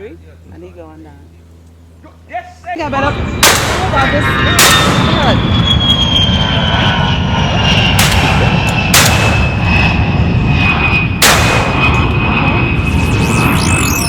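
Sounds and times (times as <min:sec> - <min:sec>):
loud steady background noise: 0:00.0 - 0:05.6
shotgun shots: 0:03.4 - 0:04.0, 0:08.0 - 0:09.5, 0:11.2 - 0:12.0
thin high whine: 0:10.7 - 0:14.0.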